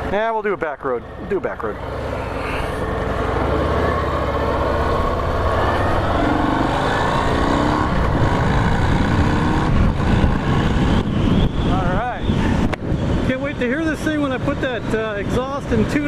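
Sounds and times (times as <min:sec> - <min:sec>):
motorcycle engine accelerating: 0:01.7 - 0:11.6.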